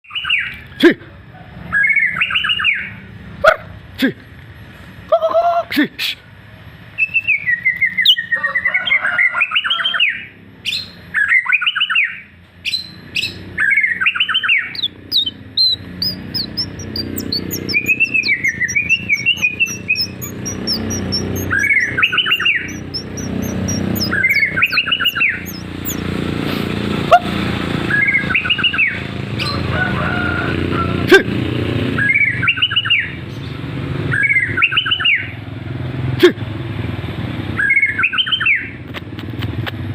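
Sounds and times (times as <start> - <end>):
bird twittering: 1.7 - 3.0, 7.0 - 26.1, 27.8 - 29.6, 32.0 - 35.4, 37.6 - 38.8
bird singing whistled phrase: 10.7 - 26.0.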